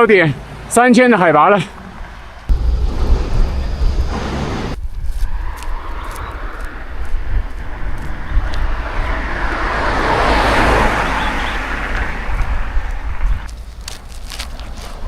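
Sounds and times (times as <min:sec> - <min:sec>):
vehicle passing: 0:01.7 - 0:13.6
wind rumble on microphone: 0:02.5 - 0:15.0.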